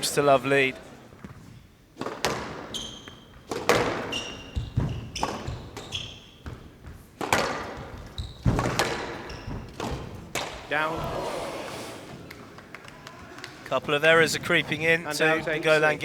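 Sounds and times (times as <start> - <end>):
shoes squeaking on wooden floor: 1.0 - 16.0
squash ball striking racket and walls: 1.2 - 12.3.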